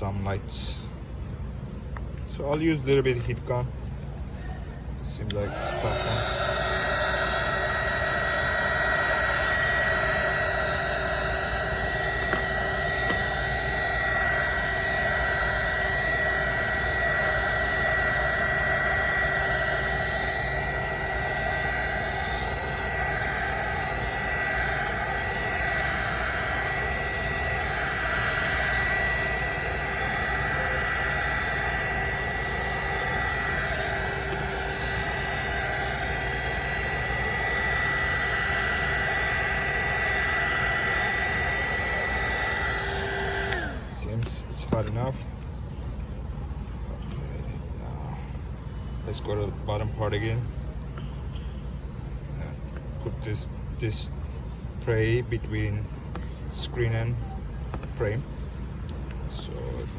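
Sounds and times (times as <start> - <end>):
fan whine: 0.0 - 59.9
heat gun blowing: 5.4 - 44.0.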